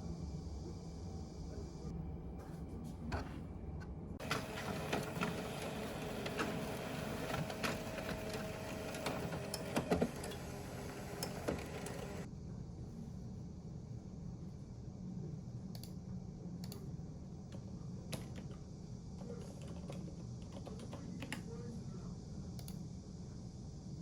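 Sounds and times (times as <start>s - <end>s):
printer clicks: 4.2s - 12.3s
printer whirring: 4.2s - 12.3s.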